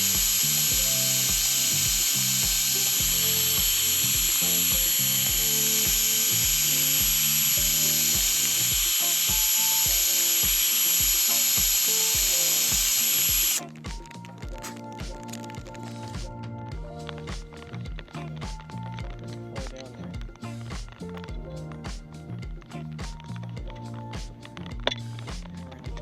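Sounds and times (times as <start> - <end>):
power drill running: 0.0 - 13.6
music with steady beat: 0.0 - 26.0.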